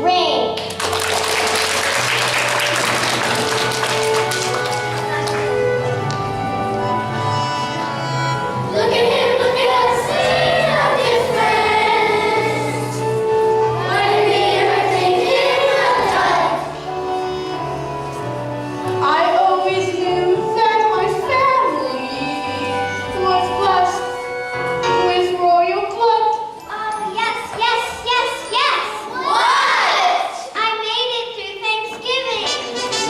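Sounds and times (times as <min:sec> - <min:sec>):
instrumental accompaniment: 0:00.0 - 0:29.6, 0:32.0 - 0:33.0
children singing: 0:08.7 - 0:16.8.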